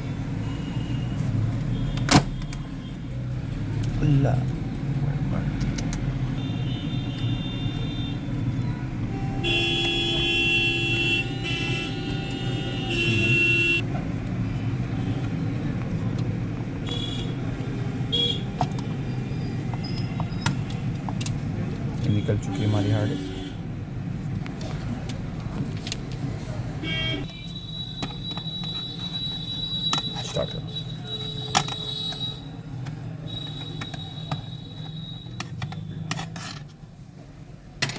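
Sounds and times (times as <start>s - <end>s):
road traffic rumbling: 0.0s - 37.9s
clicks and taps of tools: 5.6s - 6.1s, 19.7s - 21.4s, 31.2s - 36.8s
vehicle horn blasts: 9.1s - 13.8s, 18.1s - 18.5s, 26.8s - 32.6s.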